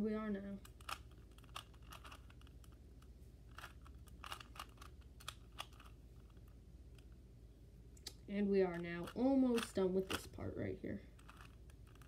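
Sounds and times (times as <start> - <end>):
puzzle cube plastic clicks: 0.5 - 7.2, 8.7 - 10.4, 11.0 - 12.0.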